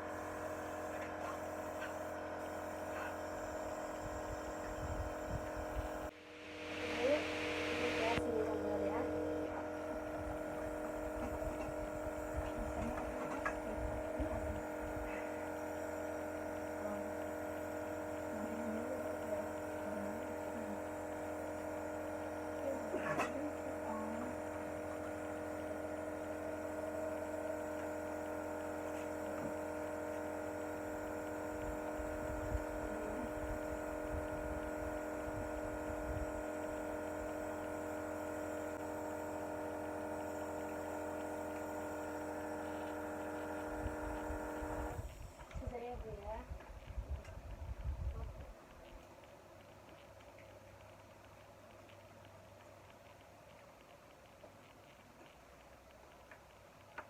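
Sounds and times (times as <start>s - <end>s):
nebulizer compressor humming: 0.0s - 46.2s.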